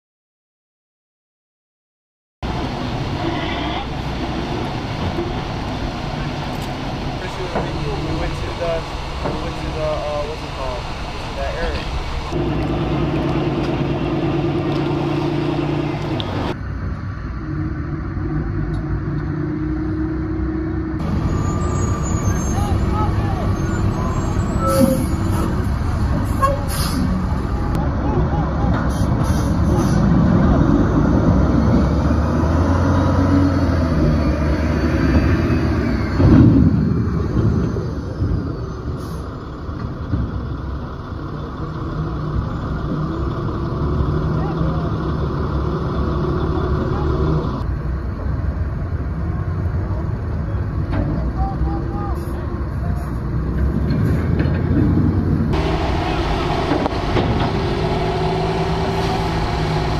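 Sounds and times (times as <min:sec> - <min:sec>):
heavy vehicle engine running: 0:02.4 - 0:59.9.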